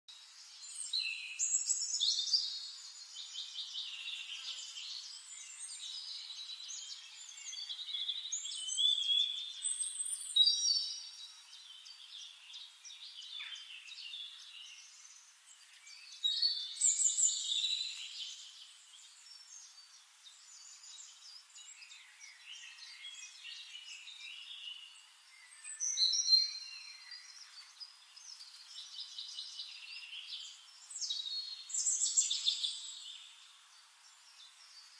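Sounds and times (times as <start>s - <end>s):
bird chirps and song: 0.1s - 34.9s.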